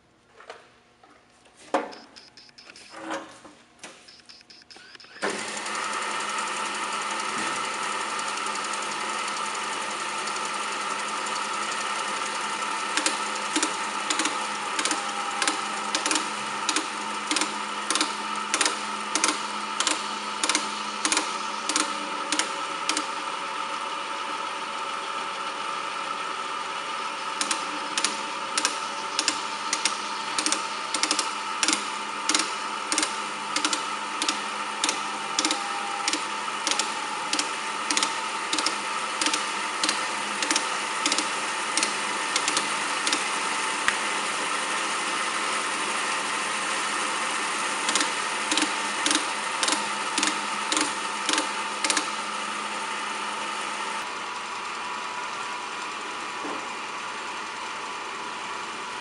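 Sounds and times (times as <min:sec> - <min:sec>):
bandsaw humming: 0:05.2 - 0:56.8
regular ticking: 0:27.4 - 0:43.2, 0:47.9 - 0:52.1.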